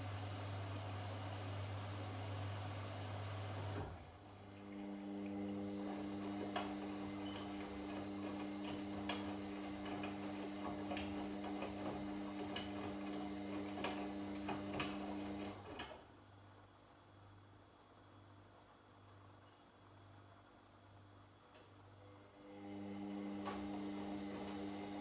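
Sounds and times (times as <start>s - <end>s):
washing machine motor humming: 0.0s - 15.8s, 22.3s - 25.0s.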